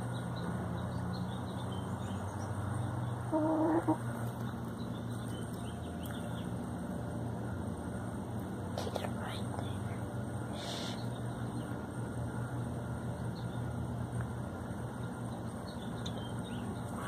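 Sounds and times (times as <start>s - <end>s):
chicken clucking: 3.3s - 4.0s.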